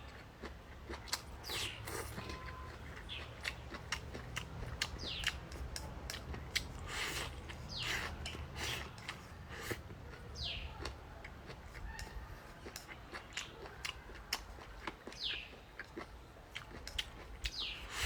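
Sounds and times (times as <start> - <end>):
crunchy chewing: 0.0 - 18.0
bird chirping: 1.5 - 5.5, 15.1 - 15.9, 17.4 - 17.9.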